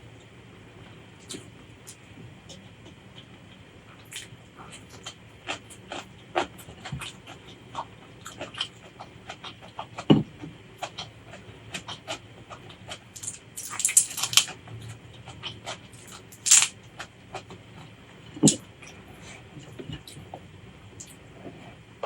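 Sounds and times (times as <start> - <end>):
chewing: 4.0 - 10.1, 10.8 - 17.9
crunchy bites: 13.1 - 14.6, 15.4 - 16.7.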